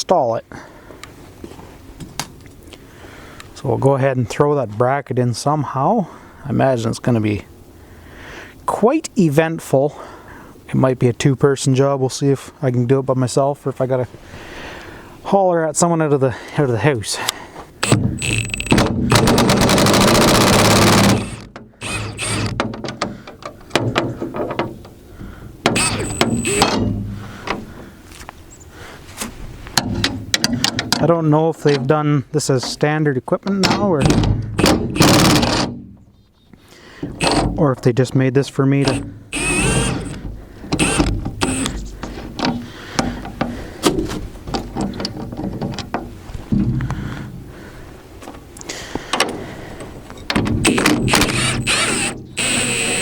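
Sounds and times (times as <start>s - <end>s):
impact wrench hammering: 17.8s - 22.6s, 25.7s - 27.0s, 34.0s - 35.8s, 50.3s - 53.0s
metal knocks and clanks: 22.5s - 24.9s, 25.7s - 27.7s, 29.8s - 31.1s, 33.5s - 35.9s, 40.0s - 47.4s.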